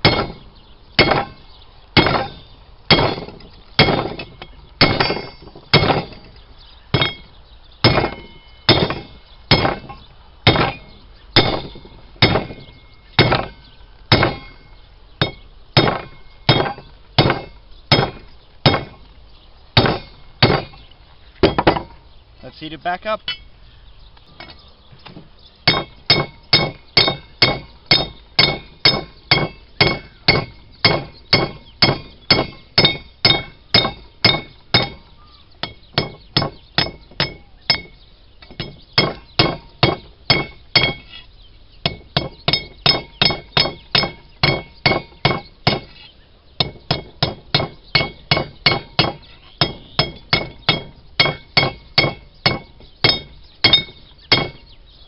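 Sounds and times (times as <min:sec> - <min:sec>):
hammer striking metal on anvil: 0:00.0 - 0:00.4, 0:01.0 - 0:01.4, 0:02.0 - 0:06.2, 0:07.9 - 0:19.0, 0:25.7 - 0:35.0, 0:35.6 - 0:41.1, 0:41.9 - 0:45.9, 0:46.6 - 0:54.6.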